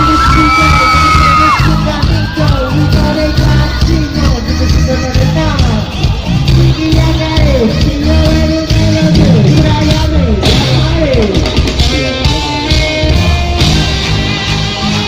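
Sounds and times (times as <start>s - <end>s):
live rock band playing loudly: 0.0s - 15.0s
sliding electric guitar notes: 0.0s - 15.0s.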